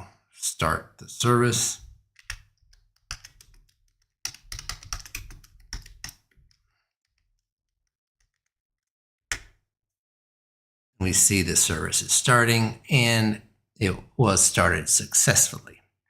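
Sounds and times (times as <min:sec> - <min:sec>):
typing on computer keyboard: 0:02.1 - 0:07.4.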